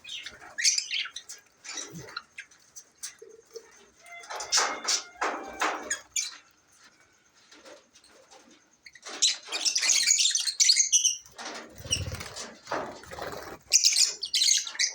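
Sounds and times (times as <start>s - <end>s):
birds flapping wings: 11.4s - 13.9s.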